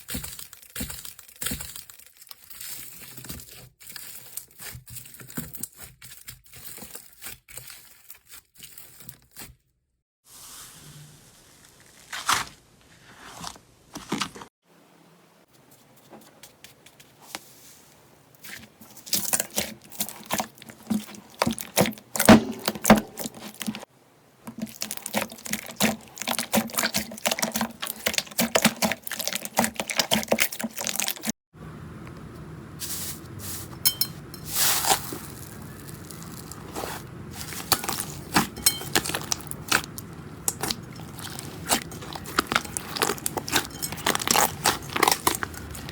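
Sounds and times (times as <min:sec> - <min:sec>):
slime squished by hand: 0:18.5 - 0:23.9, 0:24.5 - 0:31.3, 0:34.6 - 0:45.9.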